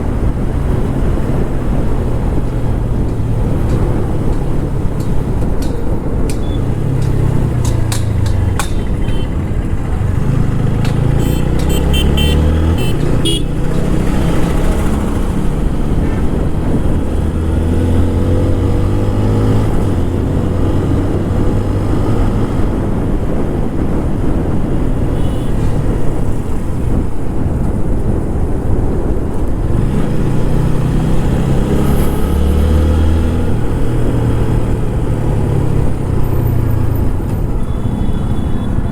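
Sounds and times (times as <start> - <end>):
motorcycle engine accelerating: 0.0 - 28.0, 28.6 - 38.9
vehicle horn beeping: 8.7 - 9.7, 11.2 - 13.8, 25.1 - 26.0, 37.3 - 38.9.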